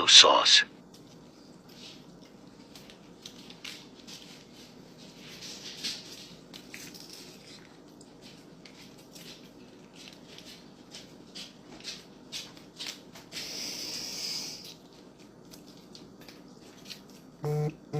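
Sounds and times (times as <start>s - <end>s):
crisp crunching and crinkling: 1.0s - 10.7s.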